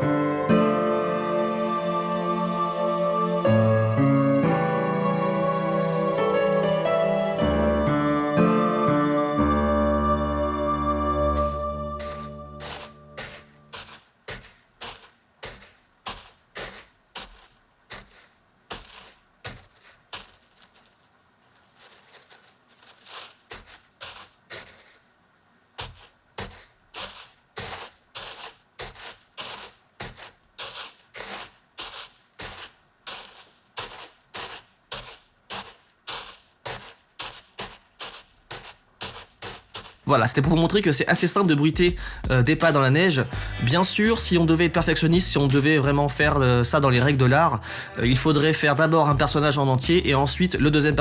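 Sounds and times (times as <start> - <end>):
footsteps crunching in snow: 11.3 - 47.2.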